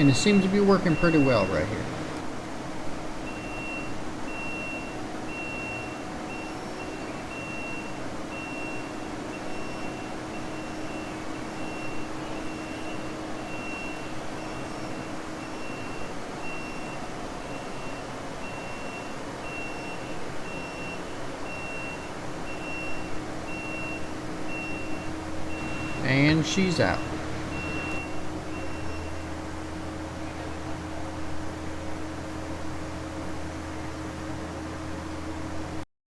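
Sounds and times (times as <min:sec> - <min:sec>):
reverse alarm beeping: 0:00.0 - 0:02.2, 0:03.2 - 0:29.4
diesel engine drone: 0:00.0 - 0:35.8.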